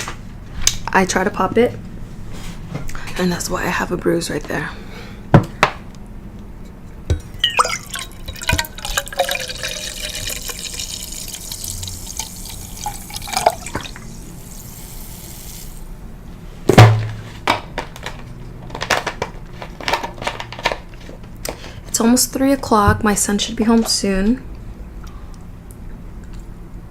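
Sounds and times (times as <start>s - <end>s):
liquid pouring into a glass: 7.4s - 15.9s.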